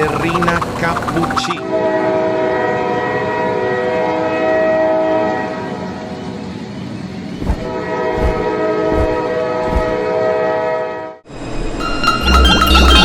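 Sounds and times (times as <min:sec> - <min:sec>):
train horn blast: 0:01.6 - 0:06.2, 0:07.6 - 0:11.2.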